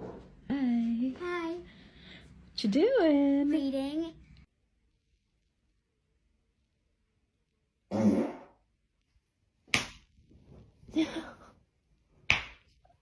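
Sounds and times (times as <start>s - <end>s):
fart: 7.9s - 8.6s.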